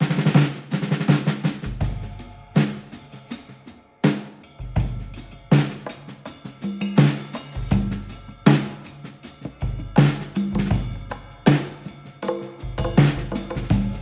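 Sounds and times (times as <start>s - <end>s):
background music with drum kit: 0.0s - 14.0s.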